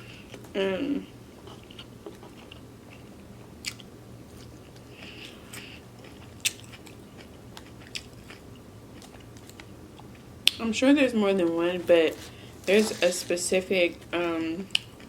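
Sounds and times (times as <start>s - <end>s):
low steady hum: 0.0s - 15.0s
close chewing mouth sounds: 1.4s - 10.3s.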